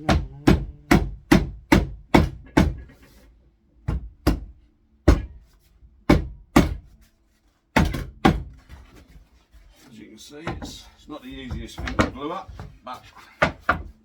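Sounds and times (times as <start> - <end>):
sharp knocks on wood: 0.0 - 3.0, 3.9 - 5.4, 6.1 - 6.9, 7.8 - 8.6.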